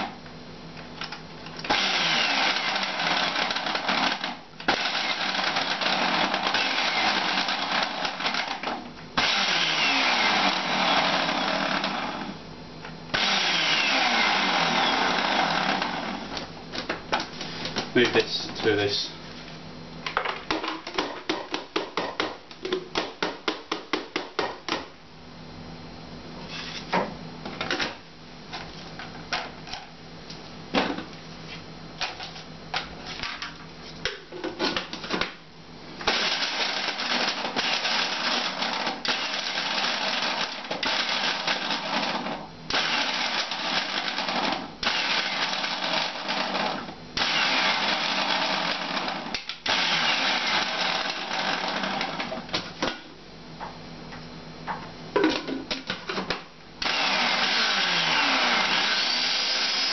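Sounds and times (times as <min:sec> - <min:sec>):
juicer motor running: 0:01.7 - 0:04.0, 0:09.2 - 0:12.3, 0:13.2 - 0:16.4, 0:42.8 - 0:52.4, 0:56.8 - 0:59.9.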